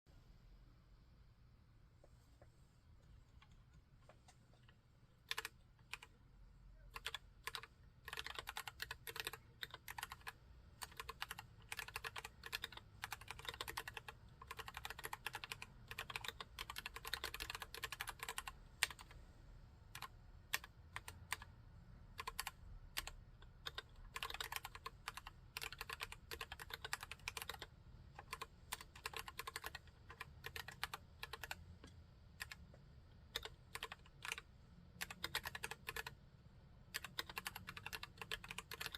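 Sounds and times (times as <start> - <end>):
mechanical keyboard typing: 5.2 - 6.2, 6.9 - 19.2, 19.9 - 21.5, 22.2 - 31.6, 32.4 - 36.2, 36.9 - 38.9.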